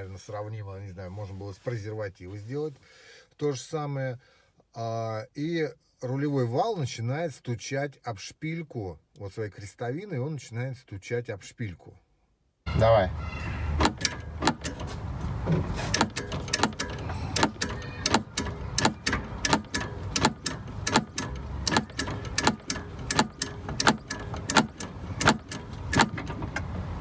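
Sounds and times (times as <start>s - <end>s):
steering shaft knocking: 12.7s - 27.0s.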